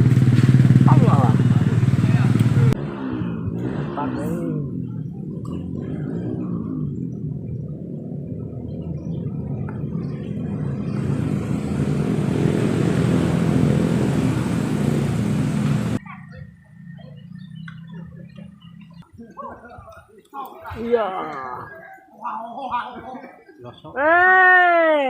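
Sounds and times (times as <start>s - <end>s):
low droning hum: 4.5s - 19.0s.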